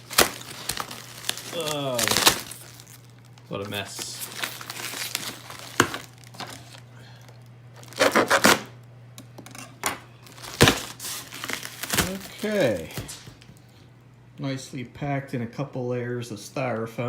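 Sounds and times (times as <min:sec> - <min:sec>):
sharp crackles: 0:00.0 - 0:06.4
cardboard tearing and crinkling: 0:00.0 - 0:06.8, 0:07.8 - 0:08.8, 0:10.2 - 0:13.4
faint steady hum: 0:00.0 - 0:17.0.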